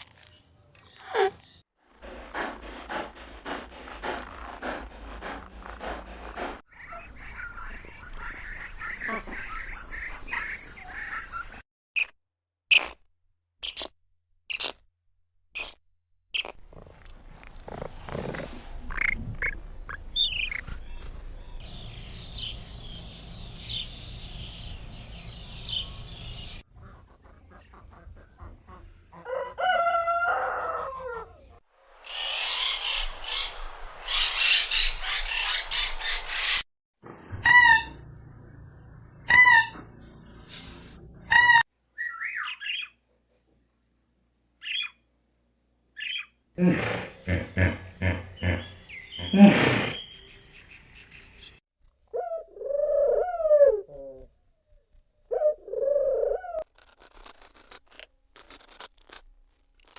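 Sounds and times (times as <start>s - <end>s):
rooster crowing: 29.2s - 31.4s.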